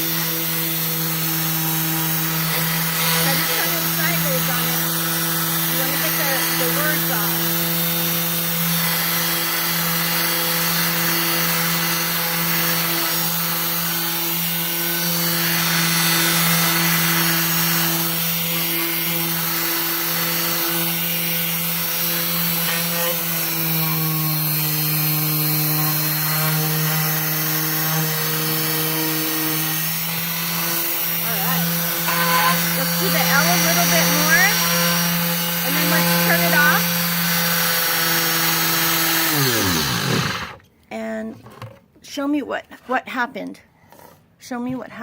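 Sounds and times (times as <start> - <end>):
sandpaper rubbing wood: 0.0 - 5.0, 19.1 - 37.9
orbital sander motor hum: 0.0 - 40.6.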